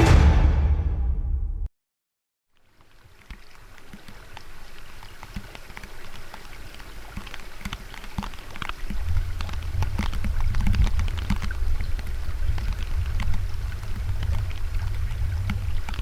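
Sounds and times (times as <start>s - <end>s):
small clicks and crackles: 2.6s - 16.0s
wind rumbling on microphone: 8.8s - 16.0s.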